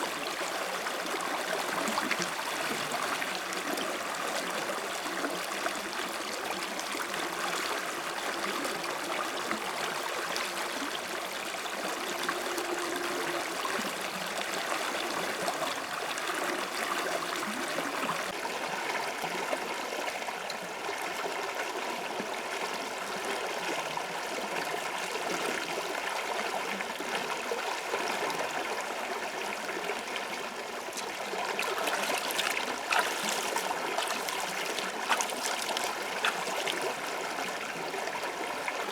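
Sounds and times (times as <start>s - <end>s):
stream water rushing: 29.7s - 38.9s.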